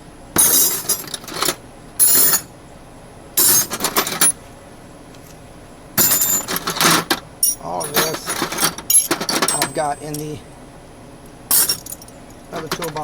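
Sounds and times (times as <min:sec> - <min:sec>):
metal hand tools clinking: 0:00.4 - 0:02.5, 0:03.4 - 0:04.4, 0:06.0 - 0:10.4, 0:11.5 - 0:13.0.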